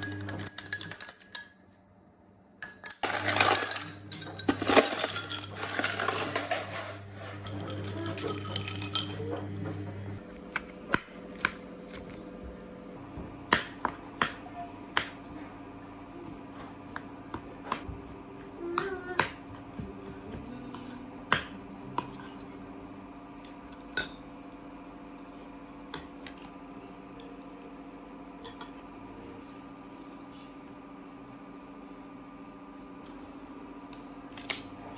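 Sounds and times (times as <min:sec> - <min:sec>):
utensils and dishes clattering: 0:00.0 - 0:01.8, 0:02.6 - 0:10.6.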